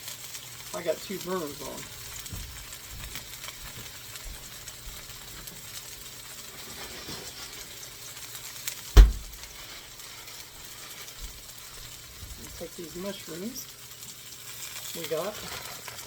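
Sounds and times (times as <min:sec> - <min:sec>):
patties sizzling in a grill pan: 0:00.0 - 0:16.0
sharp knock: 0:09.0 - 0:09.4.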